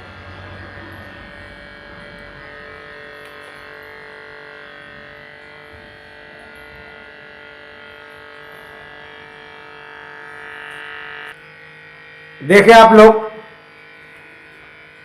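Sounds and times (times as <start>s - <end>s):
compressor electric hum: 0.0s - 15.0s.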